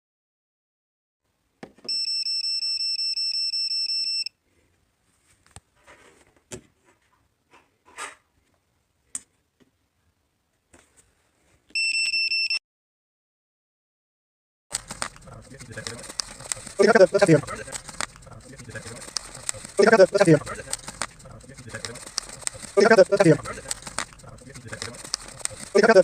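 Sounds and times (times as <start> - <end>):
electronic alarm beeping: 1.9 - 4.3, 11.8 - 12.6
handling noises and clicks: 14.7 - 26.0.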